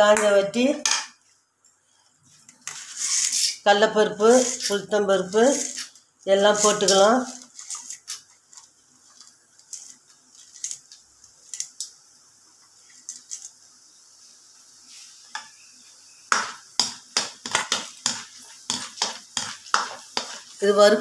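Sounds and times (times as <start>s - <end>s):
spoon scraping in a pan: 2.3s - 11.8s, 14.7s - 21.0s
lentils roasting in hot oil: 2.3s - 21.0s.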